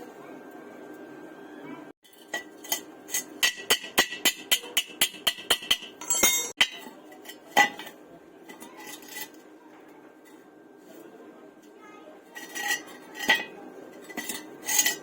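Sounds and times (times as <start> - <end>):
hammer striking metal: 3.2 - 6.9.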